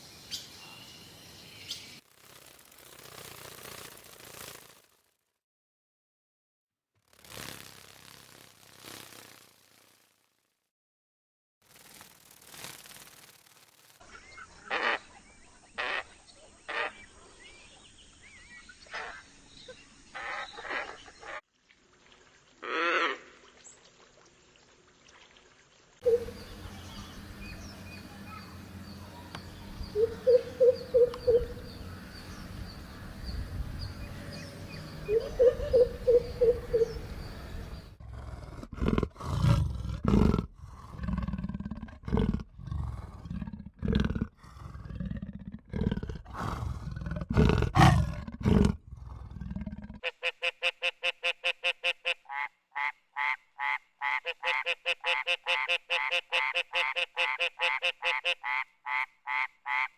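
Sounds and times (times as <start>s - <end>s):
repeated croaking calls: 14.6s - 15.1s, 15.8s - 16.1s, 26.0s - 32.4s, 34.1s - 38.0s, 49.8s - 59.9s
rapid pulsed animal calls: 26.0s - 33.4s, 34.3s - 38.0s
steady background hum: 26.1s - 38.0s
deep animal roars: 38.0s - 50.0s.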